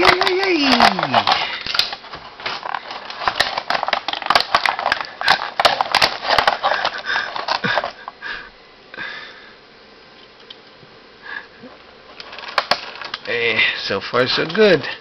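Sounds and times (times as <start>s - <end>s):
hard plastic clicking and rattling: 0.0s - 8.0s, 12.2s - 13.4s.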